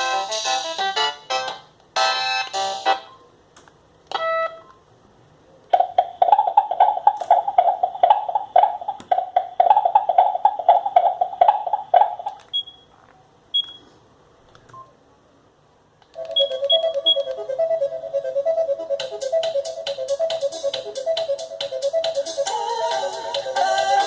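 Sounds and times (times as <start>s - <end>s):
ringtone trill: 0.0s - 3.2s, 5.8s - 12.4s, 16.2s - 24.0s
electronic ringtone melody: 16.2s - 24.0s.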